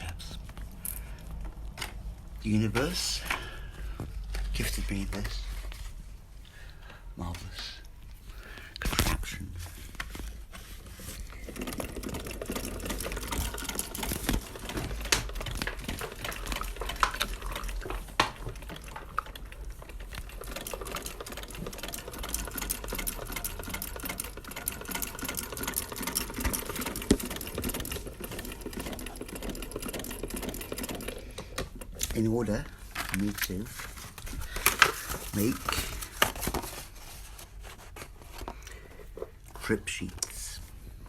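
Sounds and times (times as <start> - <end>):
sewing machine needle punching paper: 11.1 - 33.8.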